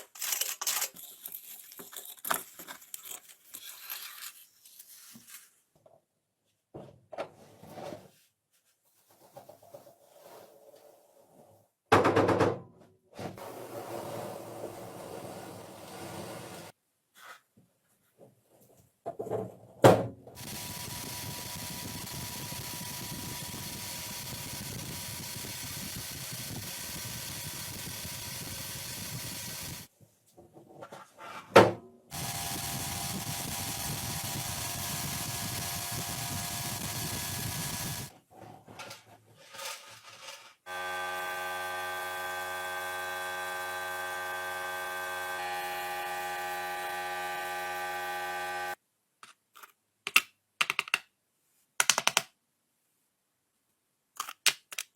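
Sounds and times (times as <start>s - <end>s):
power tool running: 15.6s - 16.7s, 20.4s - 29.9s, 32.1s - 38.1s, 40.7s - 48.8s.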